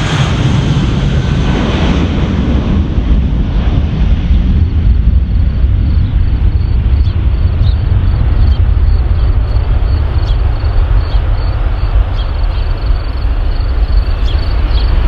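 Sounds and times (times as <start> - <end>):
aircraft engines rumbling: 0.0 - 15.0.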